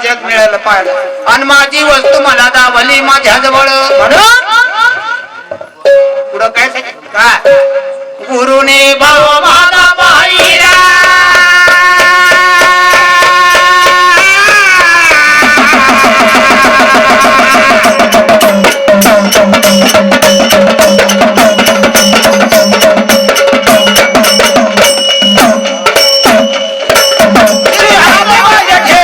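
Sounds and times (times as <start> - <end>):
held melodic note: 17.1 - 29.0.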